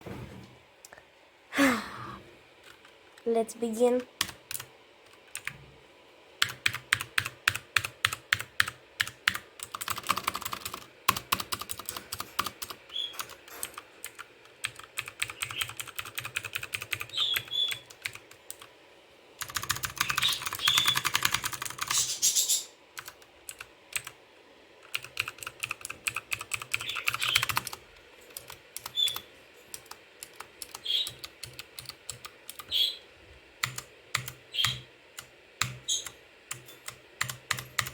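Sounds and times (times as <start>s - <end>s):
keyboard typing: 4.1s - 5.6s, 6.4s - 18.7s, 19.4s - 22.1s, 23.0s - 24.2s, 24.8s - 32.8s, 33.6s - 37.9s.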